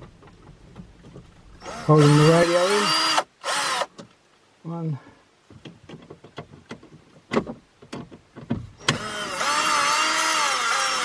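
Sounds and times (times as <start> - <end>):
cordless drill motor whining: 1.6 - 3.9, 8.8 - 11.0.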